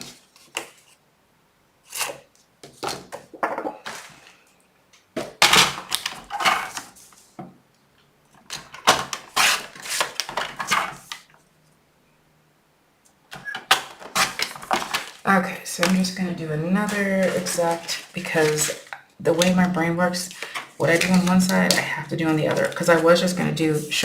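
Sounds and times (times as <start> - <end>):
paper rustling and tapping: 0.0 - 1.0, 5.2 - 7.5, 8.3 - 11.4, 13.3 - 24.0.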